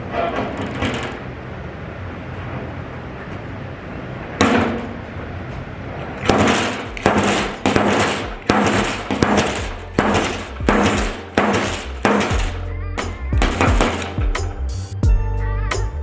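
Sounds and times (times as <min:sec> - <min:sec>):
slide hammer metallic strikes: 0:06.2 - 0:15.1.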